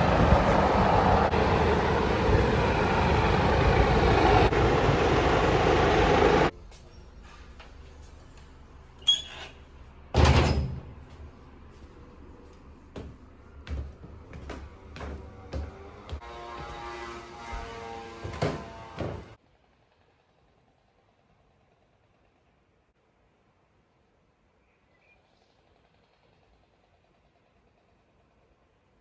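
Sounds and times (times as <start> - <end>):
strong wind on microphone: 0.0 - 4.5
short knocks: 17.5 - 19.4.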